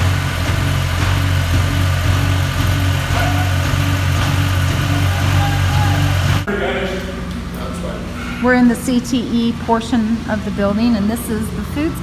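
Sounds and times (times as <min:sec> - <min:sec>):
construction machine engine running: 0:00.0 - 0:07.9.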